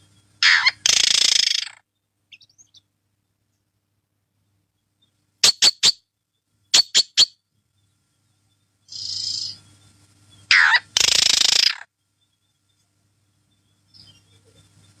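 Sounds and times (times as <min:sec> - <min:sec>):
bird chirping: 0:00.0 - 0:02.9, 0:04.8 - 0:15.0
bird screeching: 0:00.4 - 0:01.8, 0:05.4 - 0:06.0, 0:06.8 - 0:07.3, 0:10.5 - 0:11.8.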